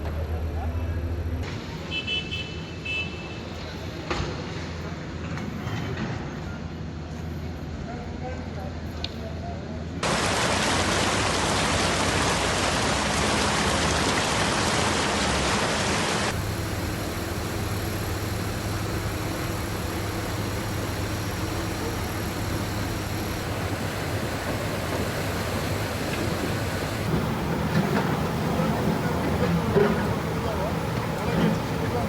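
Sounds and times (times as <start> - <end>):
floodwater rushing: 10.0 - 32.0
heavy rain: 10.0 - 32.0.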